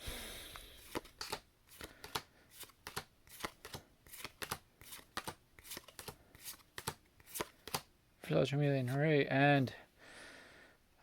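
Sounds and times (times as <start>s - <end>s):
cards rustling: 0.5s - 7.9s
cards snapping and sliding: 0.5s - 7.9s.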